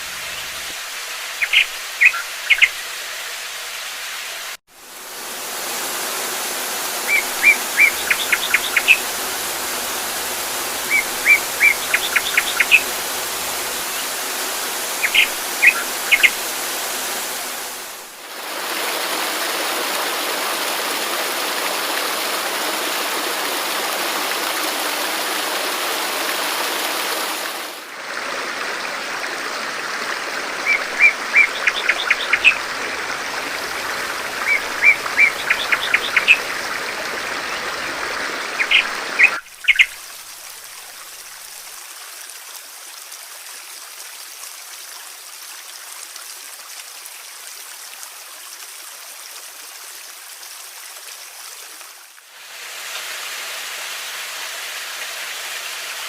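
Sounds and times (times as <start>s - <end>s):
running water: 0.0s - 56.0s
bird chirping: 1.4s - 2.8s, 7.1s - 9.2s, 10.8s - 14.2s, 14.9s - 16.4s, 30.7s - 32.7s, 33.8s - 36.8s, 38.6s - 40.0s.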